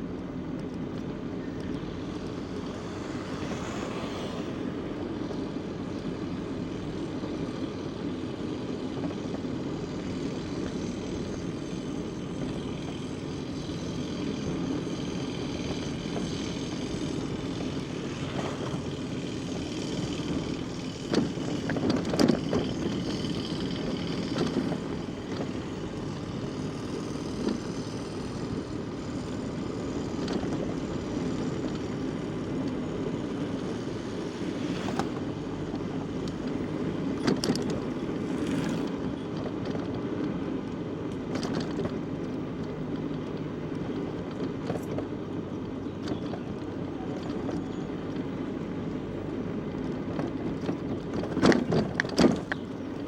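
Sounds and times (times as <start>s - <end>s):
bicycle tyres rolling on road: 0.0s - 53.0s.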